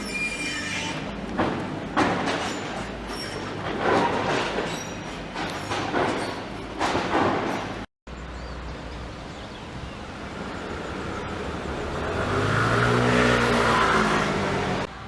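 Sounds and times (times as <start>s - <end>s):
street traffic: 0.0s - 15.0s
vehicle engine: 8.1s - 15.0s.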